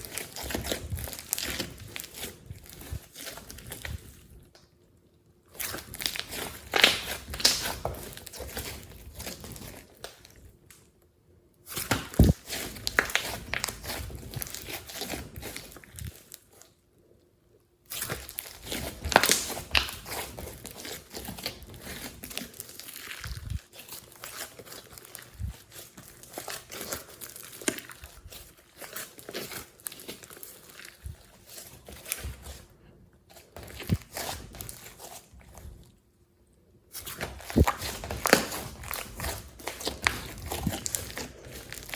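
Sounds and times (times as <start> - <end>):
slime squishing with wet clicks: 0.0 - 16.7.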